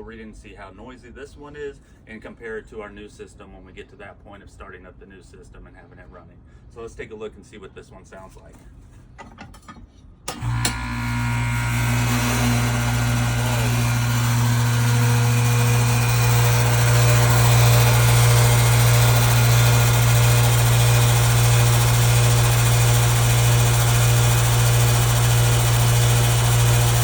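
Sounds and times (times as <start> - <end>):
compressor hum: 10.3 - 27.0
condenser fan rushing: 10.3 - 27.0.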